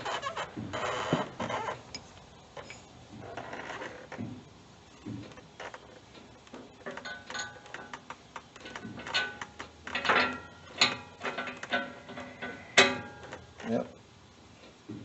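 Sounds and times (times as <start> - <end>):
metal tools clinking and clanking: 8.6 - 13.3.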